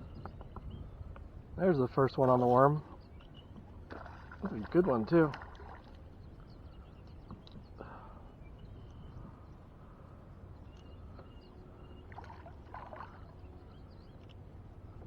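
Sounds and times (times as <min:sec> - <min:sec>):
faint river flowing: 0:01.3 - 0:15.0
light ticks: 0:10.7 - 0:11.3, 0:14.2 - 0:14.4.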